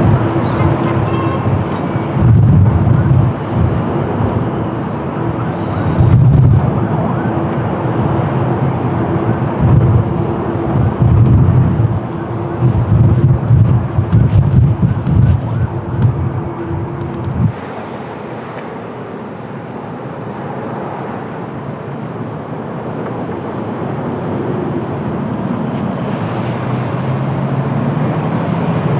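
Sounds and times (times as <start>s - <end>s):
wind buffeting microphone: 0.0s - 17.6s
jet airliner engines droning: 0.0s - 28.9s.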